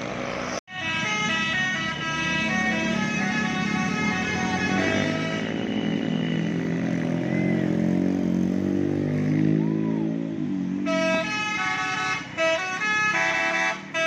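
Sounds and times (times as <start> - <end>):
bus engine running: 0.0 - 8.7, 9.6 - 14.0
multi-tone bus horn tune: 0.7 - 6.4, 10.8 - 14.0.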